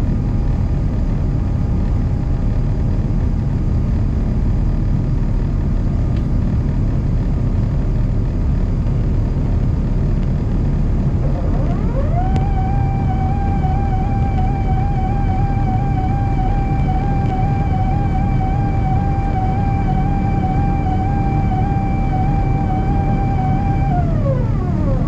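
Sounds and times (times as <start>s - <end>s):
jet engines and airflow rumble: 0.0s - 25.0s
rising whine: 6.0s - 25.0s.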